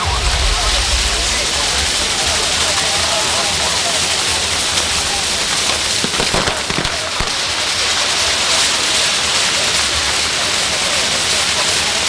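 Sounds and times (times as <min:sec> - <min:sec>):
ground fireworks hissing: 0:00.0 - 0:12.0
sharp pops: 0:04.6 - 0:07.8.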